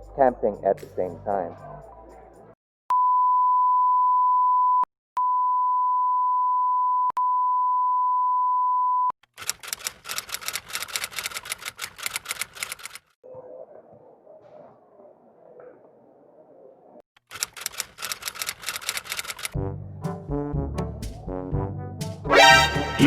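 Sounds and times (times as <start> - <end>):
censor bleep tone: 2.9 - 9.1
rapid even clicking: 9.3 - 13.2, 17.2 - 19.6.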